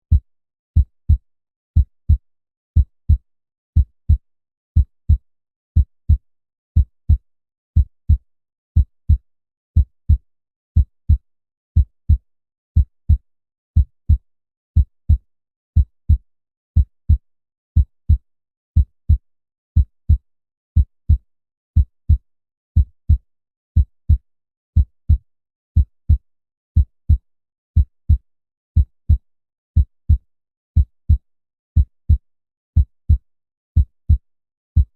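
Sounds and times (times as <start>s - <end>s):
heartbeat thumps: 6.8s - 7.2s.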